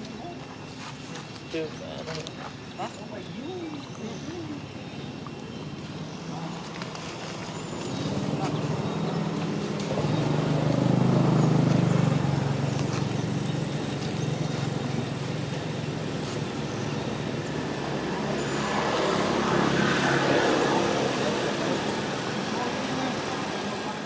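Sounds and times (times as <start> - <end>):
vehicle engine running: 5.8 - 24.0.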